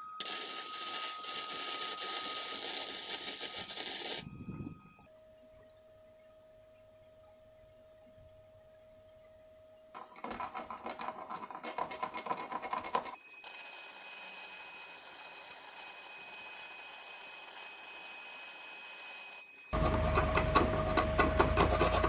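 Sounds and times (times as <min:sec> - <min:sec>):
steady hissing with high whine: 0:00.0 - 0:04.9
rapid scratching and rasping: 0:00.2 - 0:04.2.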